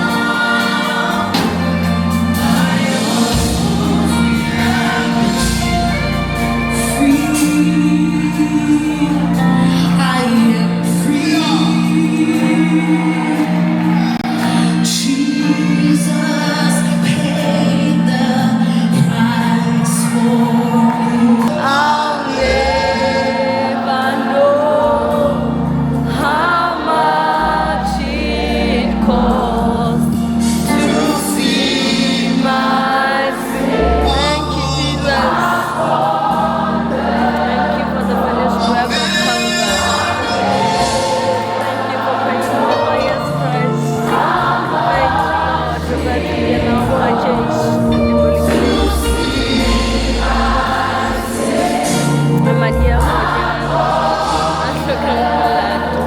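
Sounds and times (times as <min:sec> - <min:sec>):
voices singing gospel: 0:00.0 - 0:56.0
sustained low chords: 0:42.6 - 0:56.0.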